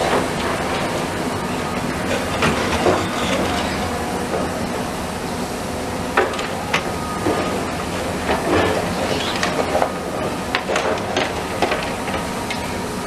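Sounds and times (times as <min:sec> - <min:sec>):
excavator engine running: 0:00.0 - 0:13.0
metal and rubble clanking: 0:01.8 - 0:04.5.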